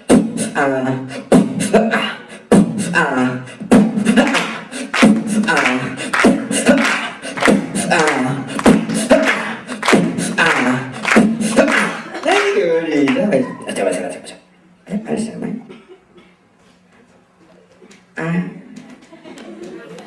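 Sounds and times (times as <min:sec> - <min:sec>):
man making sliding vocal noises: 0:00.0 - 0:12.1.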